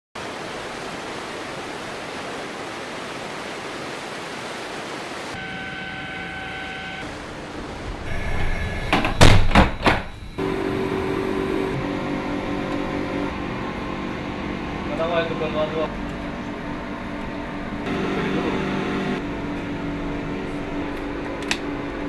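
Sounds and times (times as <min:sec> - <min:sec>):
static hiss: 0:05.3 - 0:15.9, 0:17.8 - 0:19.2
steady electronic tone: 0:05.4 - 0:07.2, 0:08.0 - 0:20.7.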